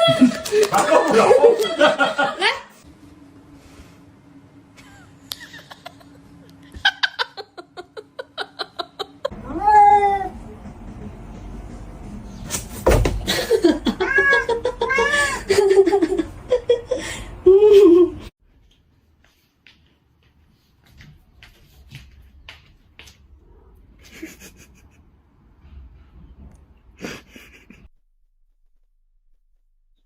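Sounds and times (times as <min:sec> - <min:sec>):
cat meowing: 0:09.4 - 0:10.4, 0:13.9 - 0:15.4.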